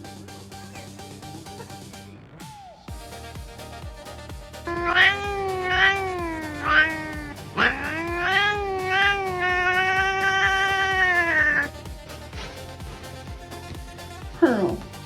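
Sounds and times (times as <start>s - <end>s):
cat yowling meows: 4.7s - 11.7s.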